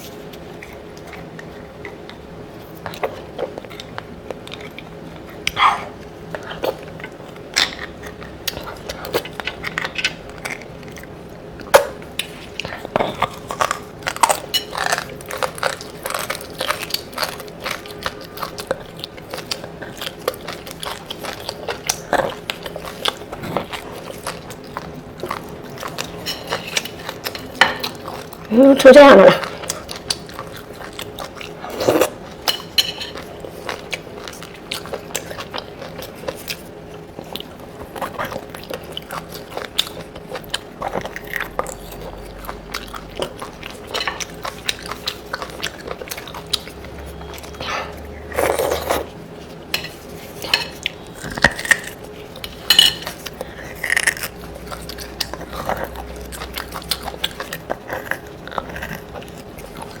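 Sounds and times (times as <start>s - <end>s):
biting and chewing: 0.0s - 60.0s
utensils clicking on dishes: 26.1s - 28.0s.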